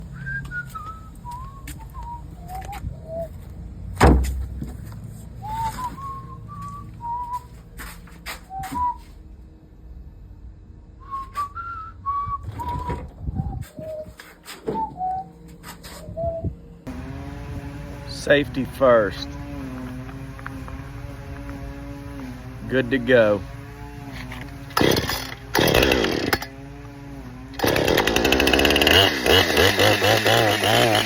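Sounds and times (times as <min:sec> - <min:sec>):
person whistling a tune: 0:00.1 - 0:03.4, 0:05.4 - 0:07.7, 0:08.3 - 0:09.2, 0:11.0 - 0:16.5
loud thump: 0:04.0 - 0:04.5.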